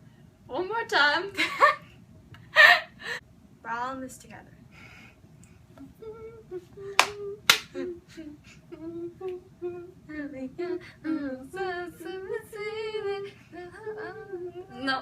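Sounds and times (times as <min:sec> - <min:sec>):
girl singing unaccompanied: 0:05.8 - 0:15.0.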